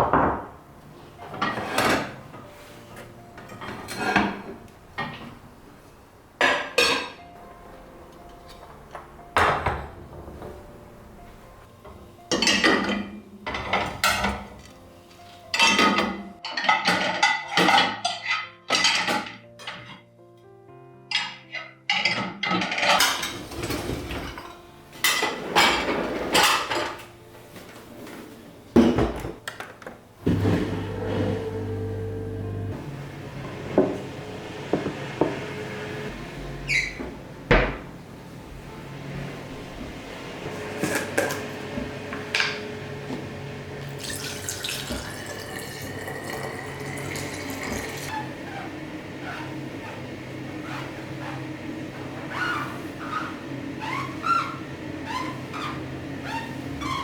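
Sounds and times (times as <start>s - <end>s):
dishes and utensils clattering: 1.2s - 5.4s, 6.4s - 7.2s, 11.9s - 20.1s, 21.1s - 27.2s, 40.4s - 42.8s, 43.9s - 48.2s
appliance hum: 23.0s - 27.1s, 30.2s - 57.0s
tap running into sink: 40.7s - 48.1s.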